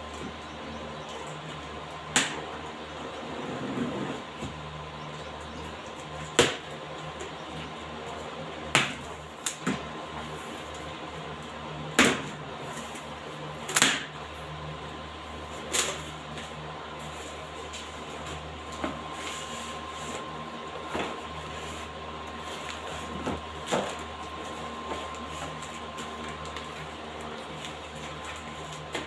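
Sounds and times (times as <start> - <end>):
welding machine hum: 0.0 - 29.0
welding sharp cracks: 13.7 - 14.2.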